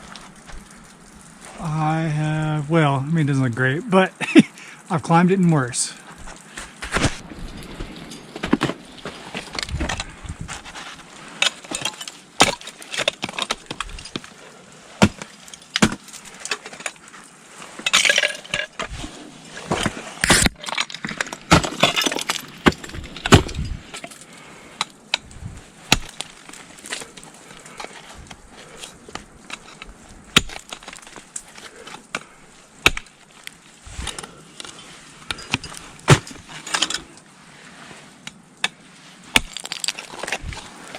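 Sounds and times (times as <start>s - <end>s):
ice axes striking ice: 6.2s - 19.0s, 19.6s - 37.0s, 38.6s - 40.8s.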